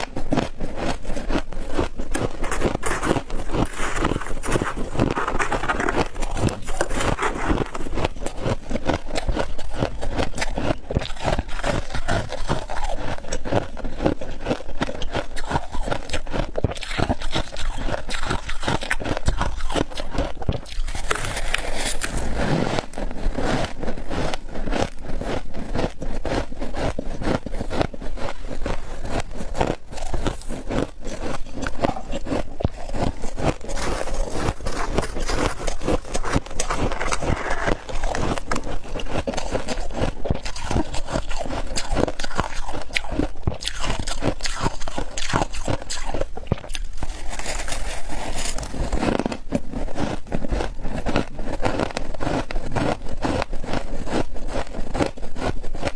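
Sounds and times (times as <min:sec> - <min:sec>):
chewing crunchy frost: 0:00.0 - 0:55.9
scraping frost: 0:01.8 - 0:10.5, 0:20.6 - 0:46.2, 0:46.9 - 0:55.9.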